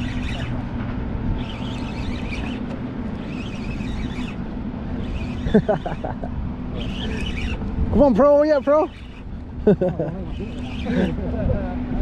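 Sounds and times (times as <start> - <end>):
low engine hum: 0.0 - 12.0
rapid high chattering: 8.6 - 11.2.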